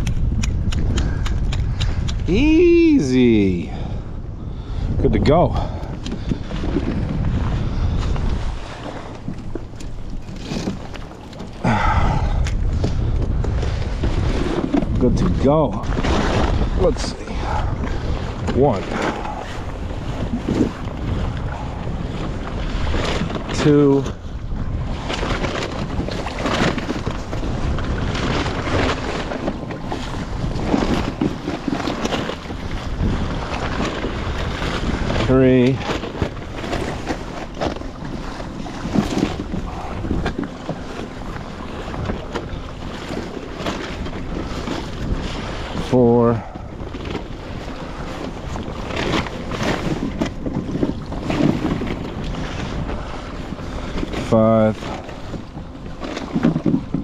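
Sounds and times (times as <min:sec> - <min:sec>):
sea water splashing: 0:00.0 - 0:57.0
wind buffeting microphone: 0:00.0 - 0:57.0.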